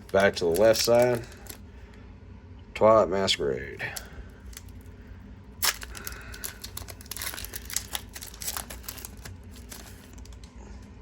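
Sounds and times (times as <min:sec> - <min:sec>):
foil wrapper ripping: 0:00.0 - 0:01.6, 0:03.8 - 0:04.9, 0:05.6 - 0:10.5
wrapper crinkling: 0:00.0 - 0:01.6, 0:03.8 - 0:05.0, 0:05.6 - 0:10.5.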